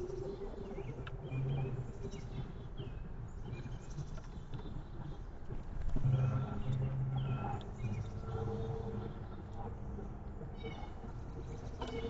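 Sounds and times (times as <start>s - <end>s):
steady outdoor background: 0.0s - 12.0s.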